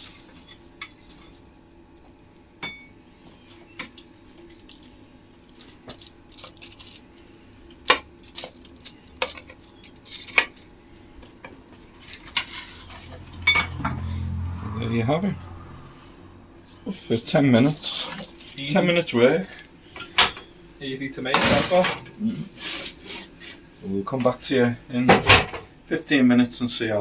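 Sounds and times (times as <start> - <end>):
utensil scraping: 11.8 - 14.8
dishes and utensils clinking: 12.2 - 14.0.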